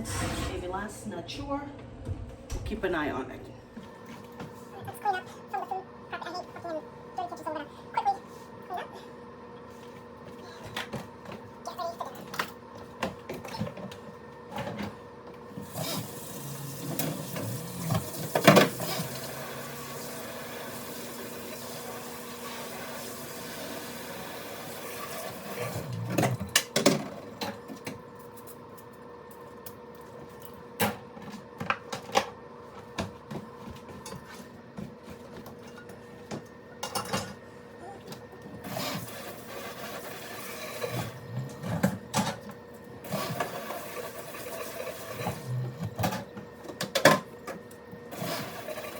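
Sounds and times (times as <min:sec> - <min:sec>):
steady hum: 0:00.0 - 0:05.1
dishes and utensils clattering: 0:36.8 - 0:37.4.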